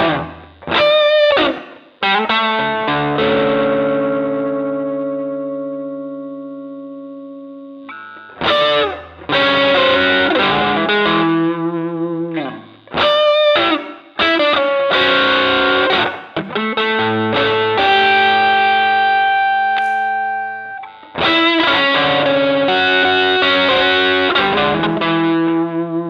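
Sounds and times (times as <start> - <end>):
electric guitar chords and notes: 0.0 - 26.0.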